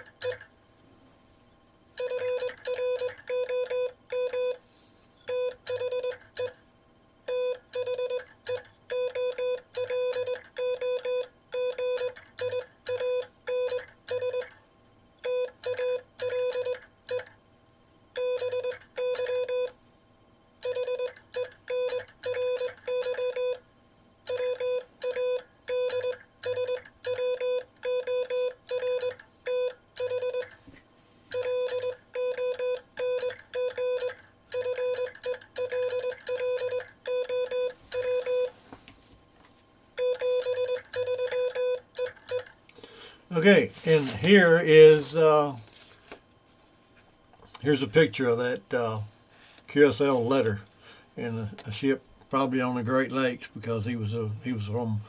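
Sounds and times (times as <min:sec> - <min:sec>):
morse code keyed tone: 0:02.0 - 0:04.6, 0:05.3 - 0:06.6, 0:07.3 - 0:14.5, 0:15.2 - 0:17.2, 0:18.2 - 0:19.8, 0:20.6 - 0:23.6, 0:24.3 - 0:30.5, 0:31.3 - 0:38.5, 0:40.0 - 0:42.5.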